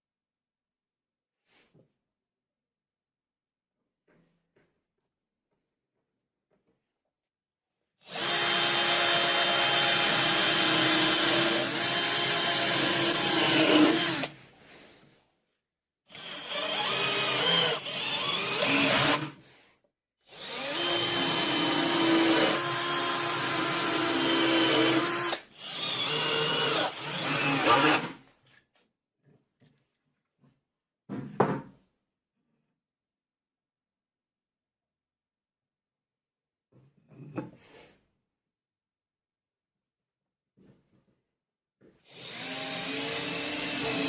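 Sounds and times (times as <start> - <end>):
electric drill running: 8.1 - 14.4, 16.1 - 19.3, 20.3 - 28.2, 42.1 - 44.0.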